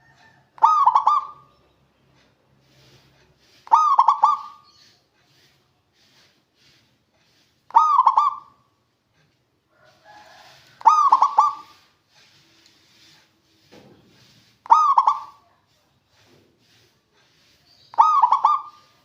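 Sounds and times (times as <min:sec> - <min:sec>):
dove warbling coo: 0:00.6 - 0:01.5, 0:03.7 - 0:04.6, 0:07.7 - 0:08.6, 0:10.8 - 0:11.9, 0:14.7 - 0:15.4, 0:17.9 - 0:19.0.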